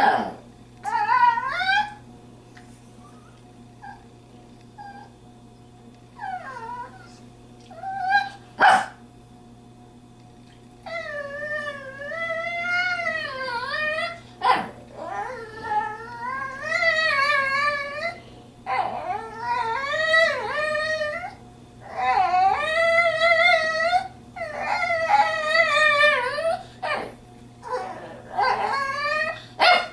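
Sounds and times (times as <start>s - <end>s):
dog whining and moaning: 0.0s - 2.0s, 3.0s - 4.1s, 4.8s - 5.2s, 6.2s - 8.5s, 10.8s - 29.9s.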